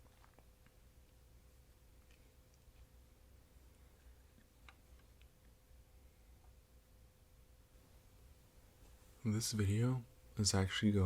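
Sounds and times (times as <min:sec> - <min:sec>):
faint steady hum: 0:00.0 - 0:11.0
faint small clicks: 0:02.0 - 0:02.9, 0:04.3 - 0:05.6.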